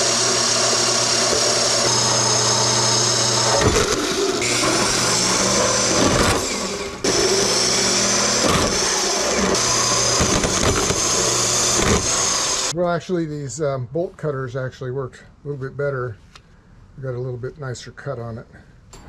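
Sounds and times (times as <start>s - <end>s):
power tool motor whine: 0.0s - 12.7s.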